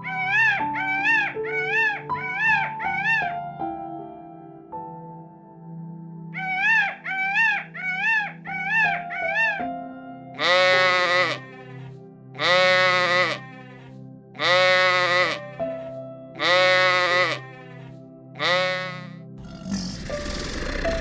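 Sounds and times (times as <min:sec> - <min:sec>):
background music: 0:00.0 - 0:21.0
animal bleating: 0:06.4 - 0:09.6, 0:10.4 - 0:21.0.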